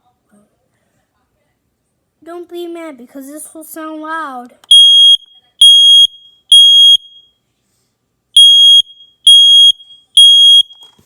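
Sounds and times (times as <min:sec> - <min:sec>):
smoke alarm beeping: 0:04.7 - 0:07.4, 0:08.4 - 0:11.0.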